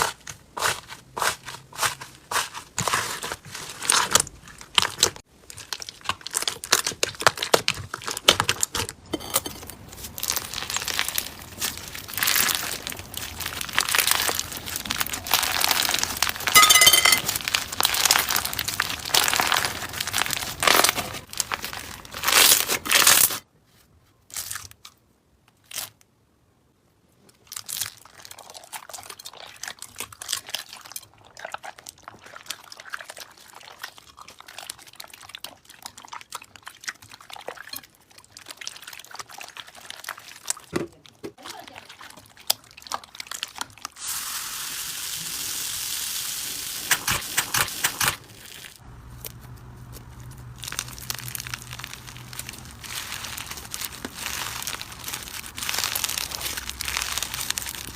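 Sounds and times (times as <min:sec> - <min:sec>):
crunchy slime crackling: 0:00.0 - 0:09.0, 0:09.8 - 0:23.4, 0:47.5 - 0:57.9.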